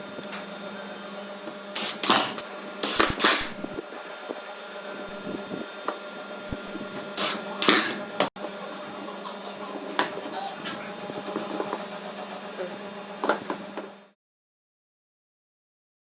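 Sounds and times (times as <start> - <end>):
steady low hum: 2.0 - 5.8, 6.4 - 8.3.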